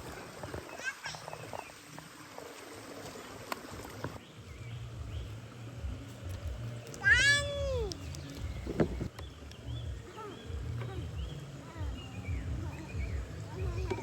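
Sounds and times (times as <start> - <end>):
low steady rumble: 4.2 - 14.0.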